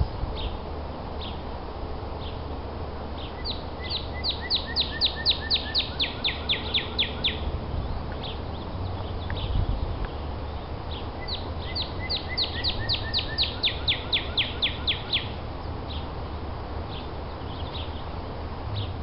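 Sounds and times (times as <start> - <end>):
bird singing sharp notes: 3.2 - 7.4, 10.9 - 16.0.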